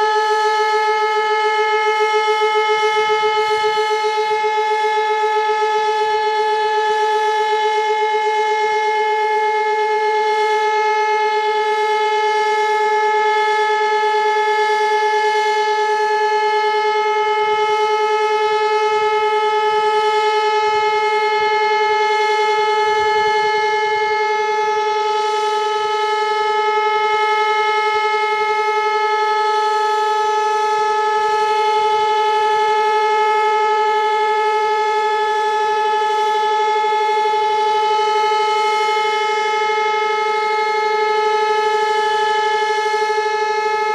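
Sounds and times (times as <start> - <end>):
siren steady tone: 0.0 - 43.9.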